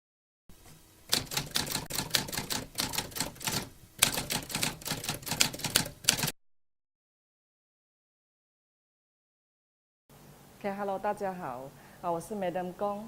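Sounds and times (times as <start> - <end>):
rapid irregular clicking: 0.7 - 6.3.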